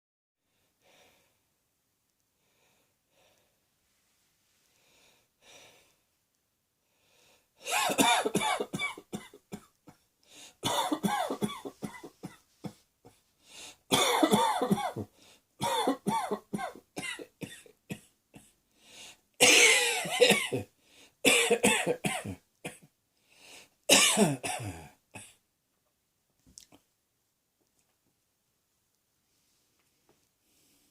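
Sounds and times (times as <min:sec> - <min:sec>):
person coughing: 0:07.6 - 0:09.7, 0:10.6 - 0:12.8, 0:13.9 - 0:18.5, 0:19.4 - 0:20.7, 0:21.3 - 0:22.8, 0:23.9 - 0:25.4.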